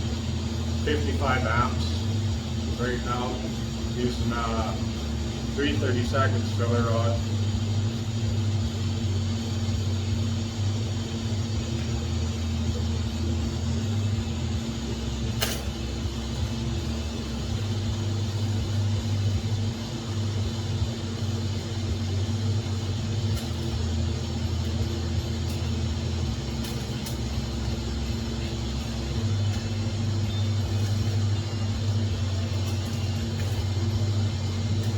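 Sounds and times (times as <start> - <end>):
welder electrical hum: 0.0 - 34.9
welding arc hiss: 0.0 - 34.9
sharp click: 15.4 - 15.8.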